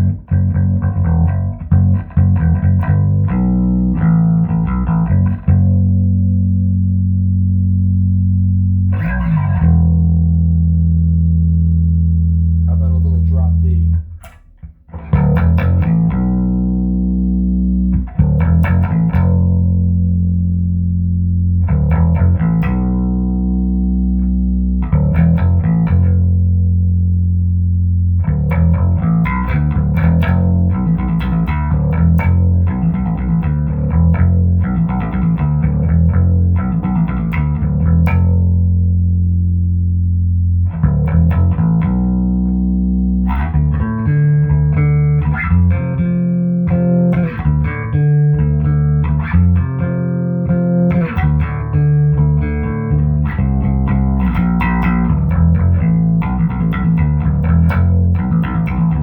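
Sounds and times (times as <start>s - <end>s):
electric bass guitar notes: 0.0s - 59.0s.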